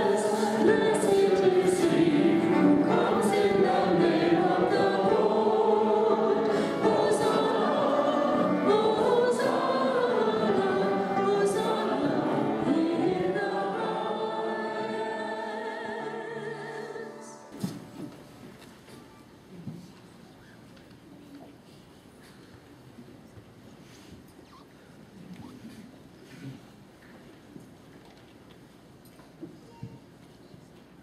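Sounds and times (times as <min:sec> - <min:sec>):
choir singing: 0:00.0 - 0:17.5.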